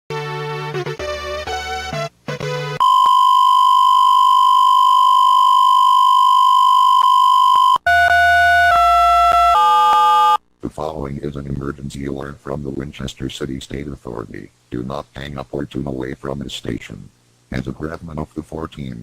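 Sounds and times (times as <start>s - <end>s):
short tones at different pitches: 2.8s - 10.4s.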